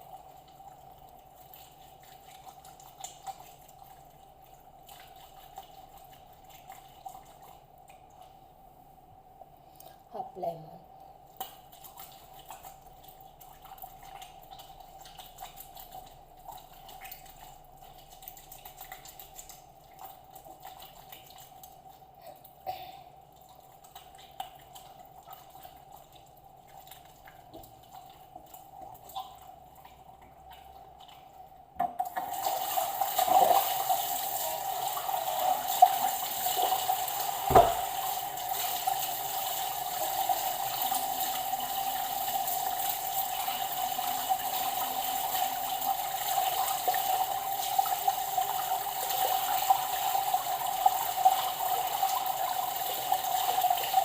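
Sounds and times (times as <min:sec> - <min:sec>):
faint steady hum: 0:00.0 - 0:54.0
tap water running into sink: 0:23.3 - 0:54.0
sharp knock: 0:37.5 - 0:37.9.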